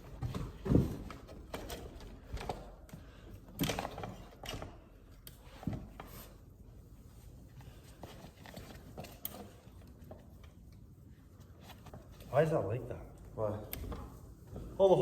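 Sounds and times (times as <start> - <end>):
metal parts knocking and clunking: 0.0 - 4.8.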